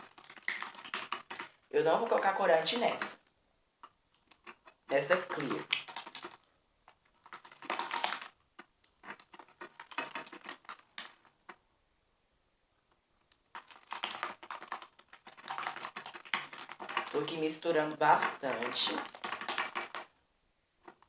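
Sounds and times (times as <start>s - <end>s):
slime stirred squishy clicks: 0.0s - 3.2s, 3.8s - 11.6s, 13.3s - 20.1s.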